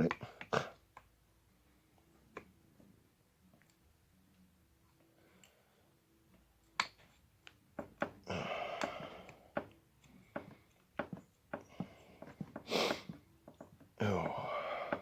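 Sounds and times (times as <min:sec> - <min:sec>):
hand tools tapping: 0:07.8 - 0:15.0.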